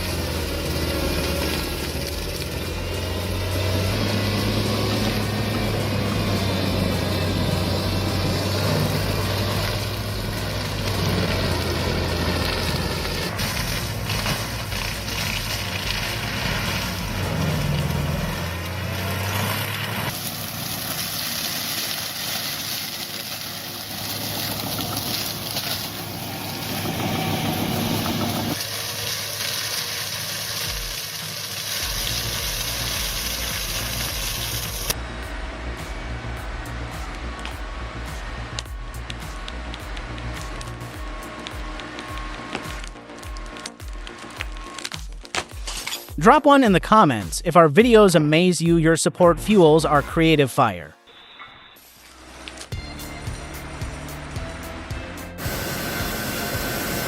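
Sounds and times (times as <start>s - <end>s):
bush-clearing machine engine running: 0.0s - 46.3s, 51.2s - 57.0s.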